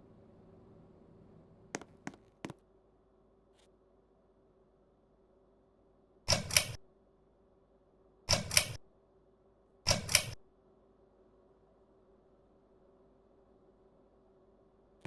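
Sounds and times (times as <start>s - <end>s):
faint steady hum: 0.0s - 15.0s
pull-chain switch double clicks: 6.3s - 6.8s, 8.3s - 8.8s, 9.9s - 10.4s.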